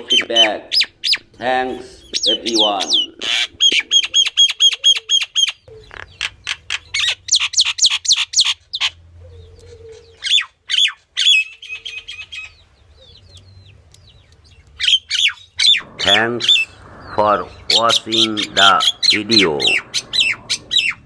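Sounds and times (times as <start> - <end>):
bird trill: 0.0 - 21.0
songbird chirps: 0.0 - 21.0
sharp downward-sweeping bird notes: 15.6 - 21.0.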